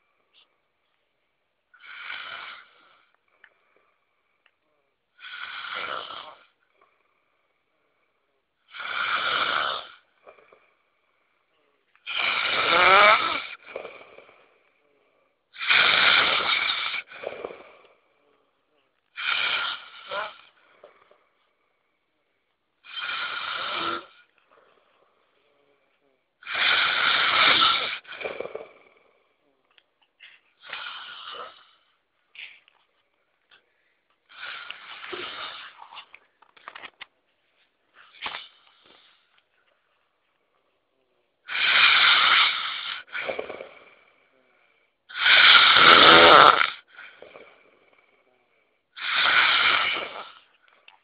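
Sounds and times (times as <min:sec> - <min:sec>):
man snoring: 0:01.8 - 0:03.1, 0:05.2 - 0:07.1, 0:08.6 - 0:10.5, 0:12.0 - 0:14.5, 0:15.6 - 0:18.0, 0:19.2 - 0:21.0, 0:22.8 - 0:24.3, 0:26.4 - 0:28.9, 0:30.6 - 0:31.9, 0:41.4 - 0:47.7, 0:49.0 - 0:50.5.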